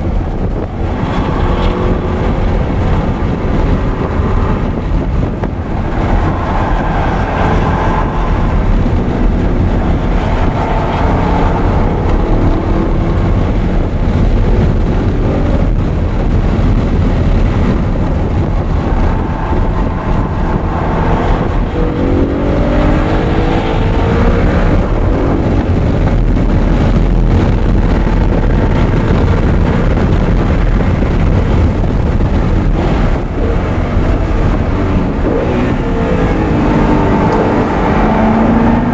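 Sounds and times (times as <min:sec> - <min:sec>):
sports car engine revving: 0:00.0 - 0:38.9
wind buffeting microphone: 0:00.0 - 0:38.9.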